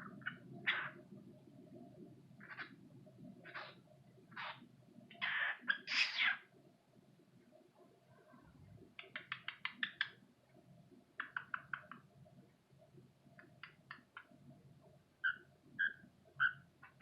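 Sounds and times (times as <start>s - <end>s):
cockatiel clicking chirps: 9.0s - 10.2s, 11.2s - 12.0s, 13.4s - 14.3s.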